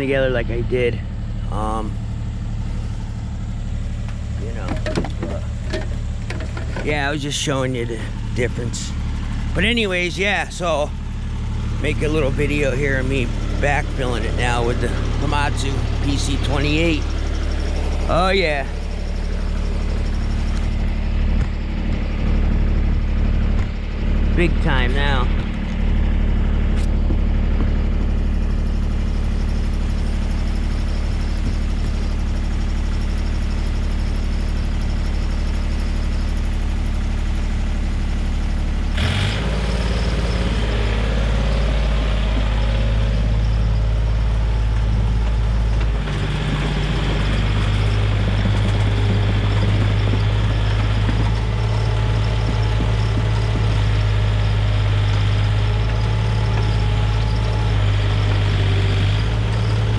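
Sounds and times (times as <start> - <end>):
excavator diesel engine running: 0.0 - 59.9
clunk: 4.0 - 6.9.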